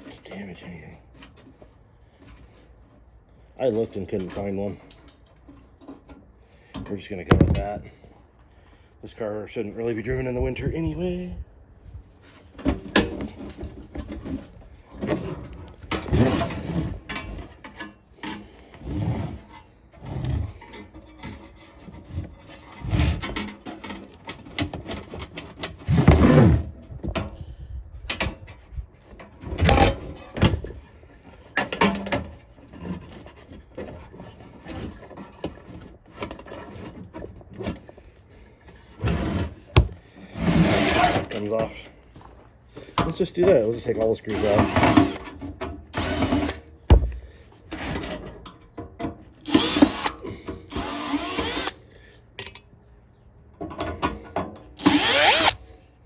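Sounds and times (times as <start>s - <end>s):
hand tools scraping: 12.2s - 26.5s, 29.9s - 41.8s, 42.7s - 48.5s, 49.3s - 52.7s, 54.0s - 55.8s
screws clicking and knocking: 44.3s - 45.3s, 46.0s - 46.6s, 49.4s - 51.8s, 54.8s - 55.6s.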